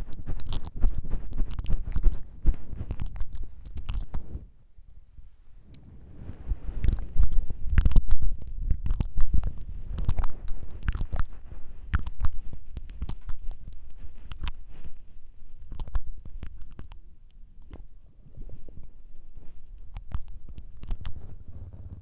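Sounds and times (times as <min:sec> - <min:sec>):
wet tongue clicks: 0:00.0 - 0:04.2, 0:06.8 - 0:14.8, 0:15.6 - 0:17.9, 0:19.8 - 0:21.2.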